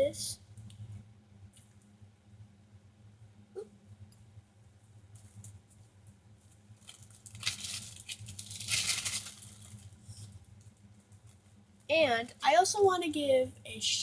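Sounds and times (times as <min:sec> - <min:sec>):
plastic bag crinkling: 0:06.6 - 0:10.4.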